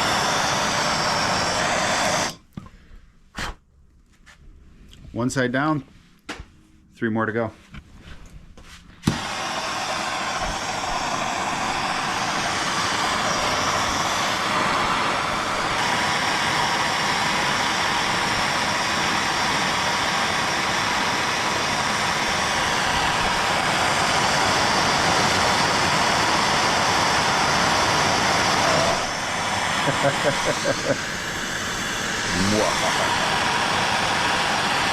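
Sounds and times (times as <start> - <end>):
gas torch hissing: 0.0 - 2.5, 9.0 - 34.9.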